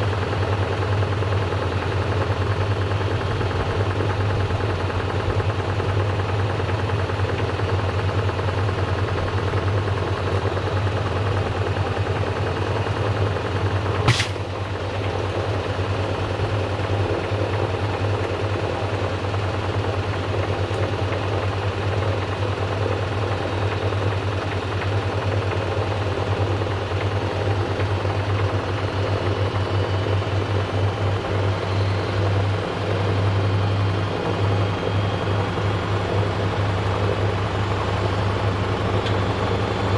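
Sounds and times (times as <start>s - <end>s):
sharp bang: 14.1s - 14.6s.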